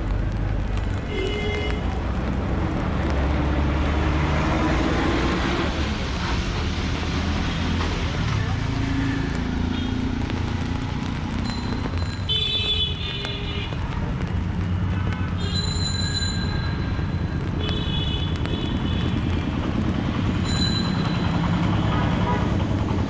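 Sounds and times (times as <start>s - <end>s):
rain: 0.0s - 23.0s
traffic engine noise: 0.0s - 23.0s
vehicle horns honking: 1.1s - 2.0s, 21.2s - 22.7s.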